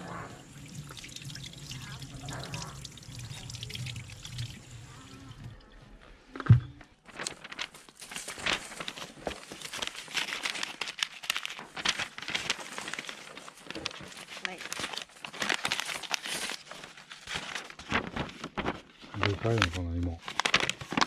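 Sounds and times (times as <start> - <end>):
water trickling: 0.3 - 5.8
crinkling and crackling: 1.7 - 21.0.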